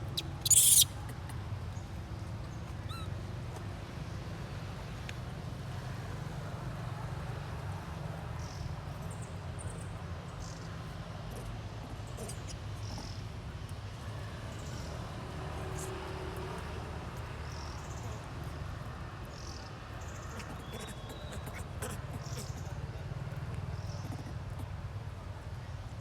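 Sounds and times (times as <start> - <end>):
short high chirps: 0.2 - 0.9.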